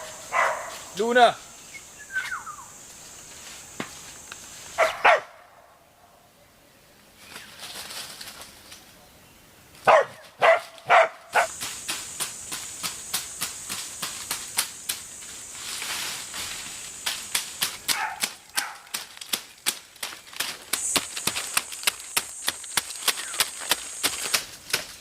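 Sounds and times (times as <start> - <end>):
dog barking: 0.3 - 0.8, 4.8 - 5.4, 9.8 - 11.5, 17.9 - 18.9.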